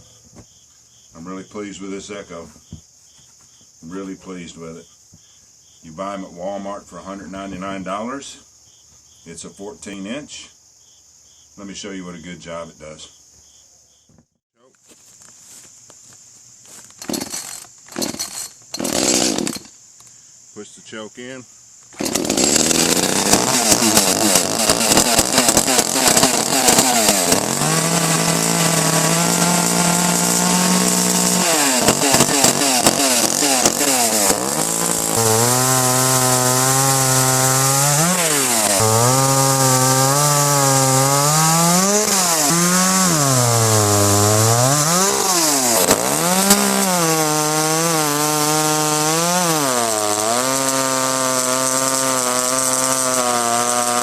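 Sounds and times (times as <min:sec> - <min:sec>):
chainsaw cutting wood: 0:16.9 - 0:19.8, 0:21.9 - 0:54.0.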